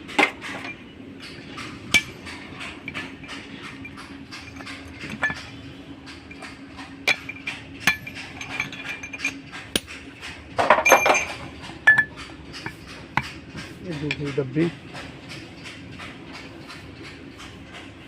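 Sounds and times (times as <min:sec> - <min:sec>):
steady low hum: 0:00.0 - 0:18.0
hammer striking metal: 0:01.6 - 0:10.0.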